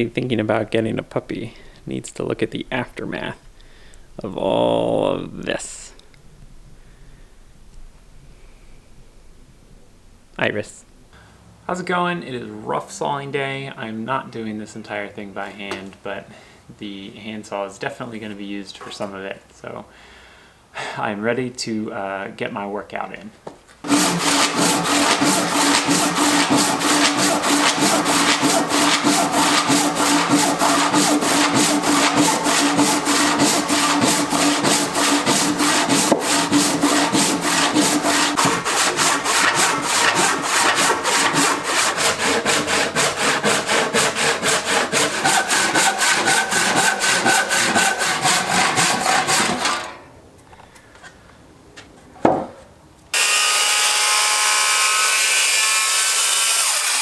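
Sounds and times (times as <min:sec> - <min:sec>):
handsaw cutting wood: 0:23.8 - 0:49.9, 0:53.2 - 0:57.0.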